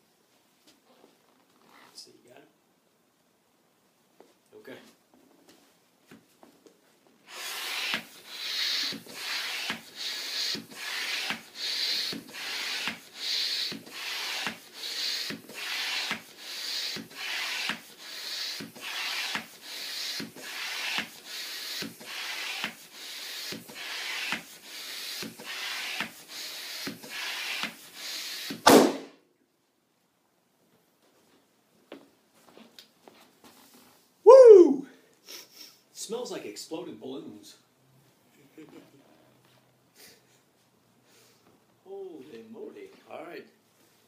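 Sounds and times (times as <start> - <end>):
balloon pump strokes: 7.2 - 28.9
balloon bursting: 7.3 - 29.2.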